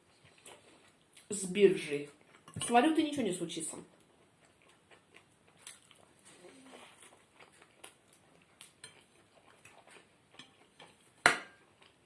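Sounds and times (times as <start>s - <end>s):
cutlery clinking on a plate: 10.4s - 11.6s.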